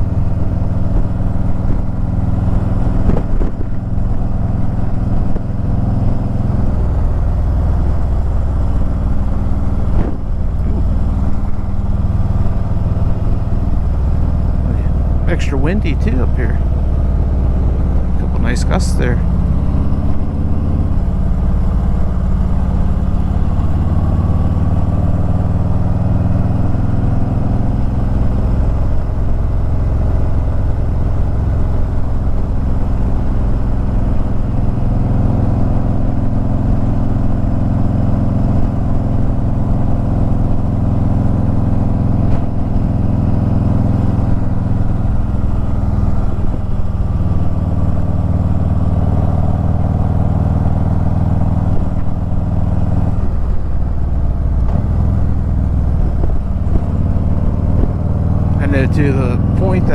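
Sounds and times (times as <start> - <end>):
wind rumble on microphone: 0.0 - 7.2, 7.8 - 14.8, 53.0 - 58.6
motorcycle engine running: 0.0 - 59.9.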